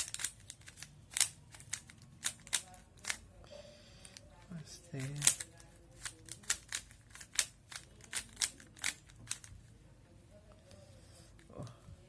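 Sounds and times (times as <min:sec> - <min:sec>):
rubik's cube clicking: 0:00.0 - 0:03.2, 0:05.1 - 0:09.5.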